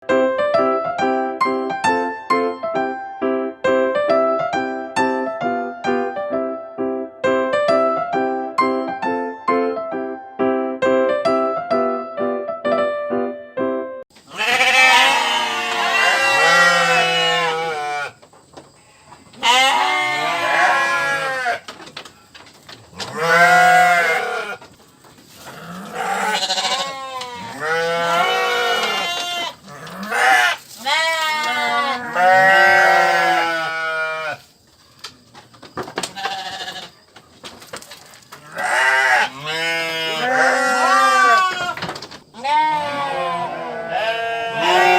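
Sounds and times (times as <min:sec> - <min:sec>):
goats bleating: 0:14.3 - 0:18.2, 0:18.8 - 0:21.7, 0:23.0 - 0:24.6, 0:25.4 - 0:34.4, 0:36.2 - 0:36.9, 0:38.4 - 0:41.8, 0:42.4 - 0:44.9.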